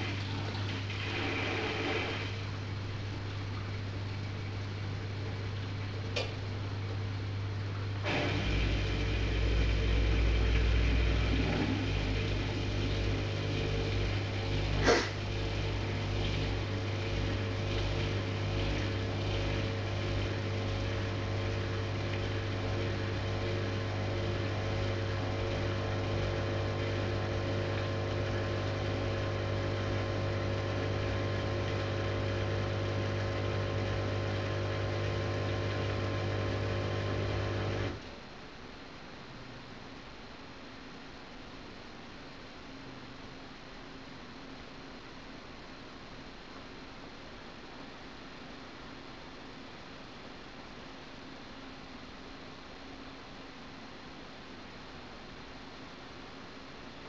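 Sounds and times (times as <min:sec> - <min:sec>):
dishwasher motor hum: 0:00.0 - 0:38.4.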